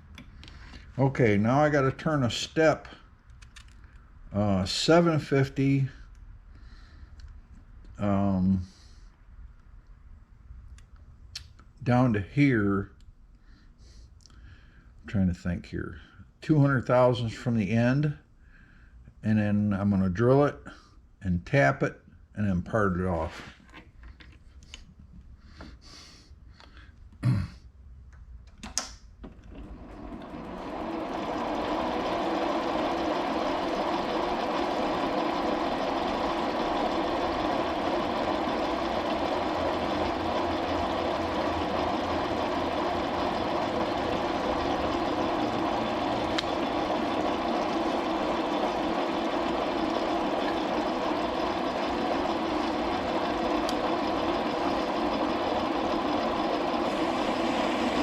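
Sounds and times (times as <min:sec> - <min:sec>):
metal lathe running: 0:29.6 - 0:58.0.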